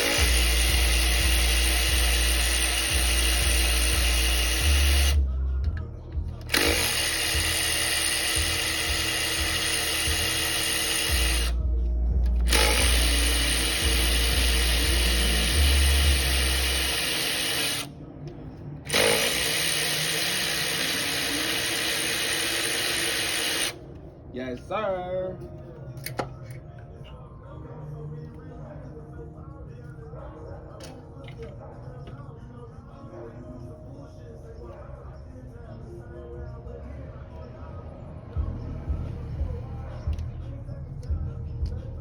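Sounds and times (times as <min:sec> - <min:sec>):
power driver spinning bolts: 0:00.0 - 0:11.6, 0:12.2 - 0:17.9, 0:18.9 - 0:23.8.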